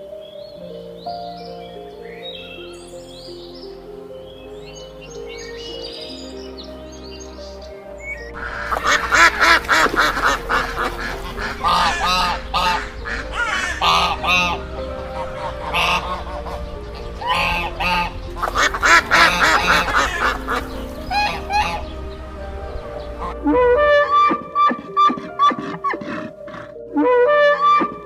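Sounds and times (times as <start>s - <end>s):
background music: 0.0s - 28.0s
waterfowl calling: 7.3s - 28.0s.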